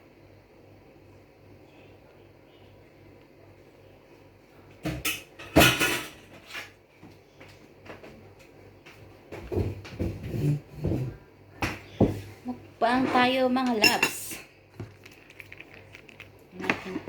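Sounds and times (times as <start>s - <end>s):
dishes and utensils clattering: 4.9s - 6.8s, 13.0s - 14.4s.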